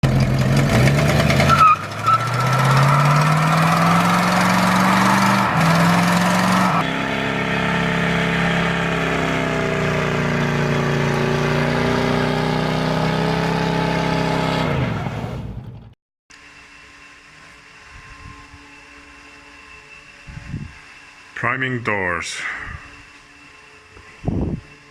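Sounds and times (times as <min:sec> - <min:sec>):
car engine accelerating: 0:00.0 - 0:16.0.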